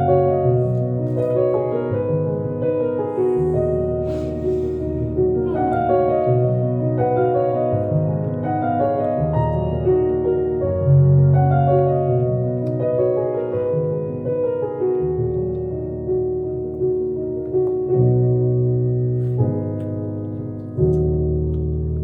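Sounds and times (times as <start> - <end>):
slow piano chords: 0.0 - 22.0.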